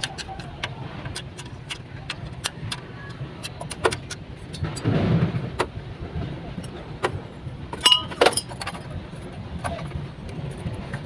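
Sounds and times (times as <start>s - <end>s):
metallic clicks and taps: 0.0s - 4.8s.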